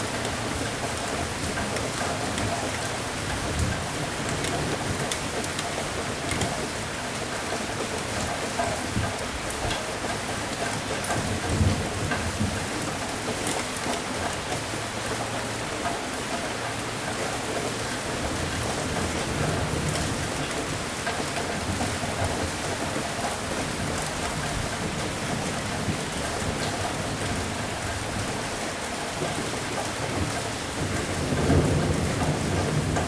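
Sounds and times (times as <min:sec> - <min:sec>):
steady rain falling: 0:00.0 - 0:33.0
thunder rumbling: 0:29.2 - 0:33.0.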